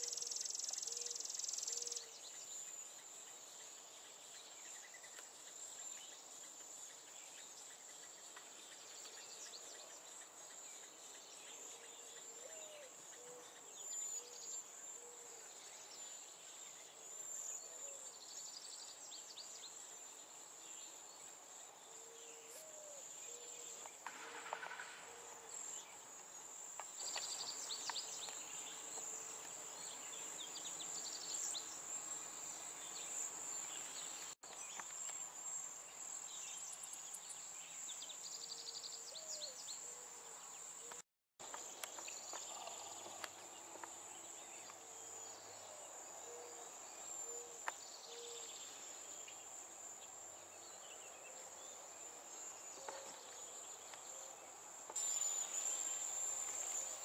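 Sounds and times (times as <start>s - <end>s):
crickets trilling: 16.1s - 57.0s.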